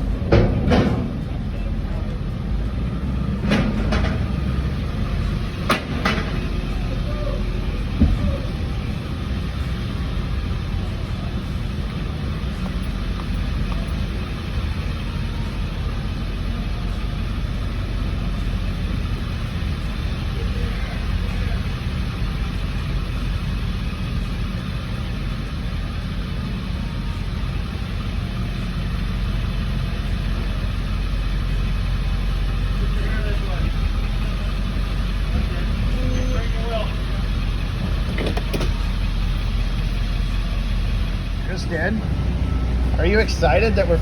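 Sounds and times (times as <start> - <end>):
vehicle engine idling: 0.0 - 44.0.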